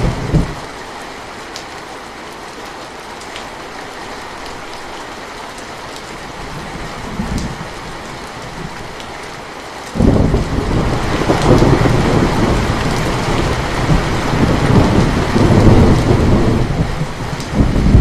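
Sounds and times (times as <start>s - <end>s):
thunder rumbling: 0.0s - 0.7s, 6.4s - 8.9s, 10.0s - 18.0s
heavy rain: 0.0s - 18.0s.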